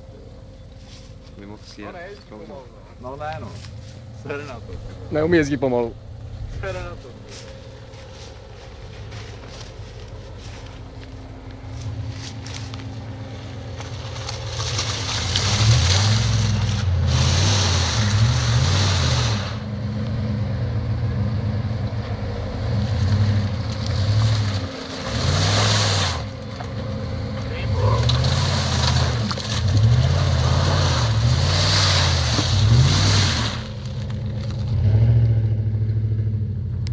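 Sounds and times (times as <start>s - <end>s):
tyres spinning in mud: 8.3s - 19.5s, 22.8s - 35.2s
engine revving hard: 15.0s - 19.7s, 22.6s - 26.4s, 27.5s - 33.8s.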